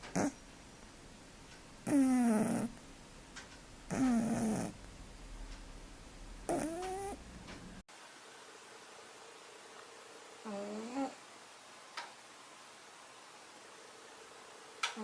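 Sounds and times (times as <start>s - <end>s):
cat meowing: 6.5s - 7.2s.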